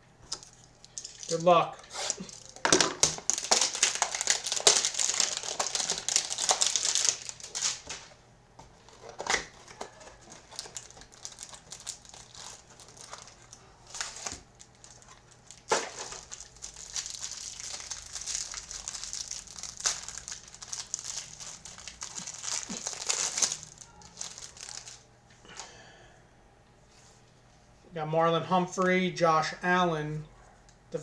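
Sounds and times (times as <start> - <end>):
packaging crinkling and tearing: 0.3 - 25.0.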